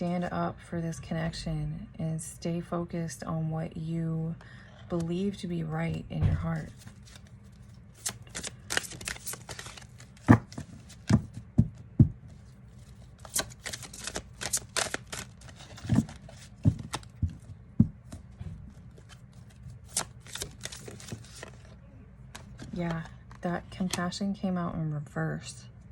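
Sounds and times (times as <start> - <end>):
cards shuffling and snapping: 6.6 - 24.0.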